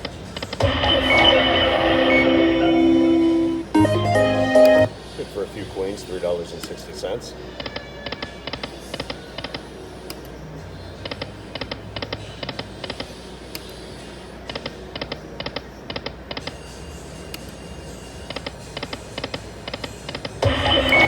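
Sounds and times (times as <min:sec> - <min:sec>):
casino background noise: 0:00.0 - 0:07.3
slot machine reel-stop tones: 0:00.6 - 0:04.9, 0:20.4 - 0:21.0.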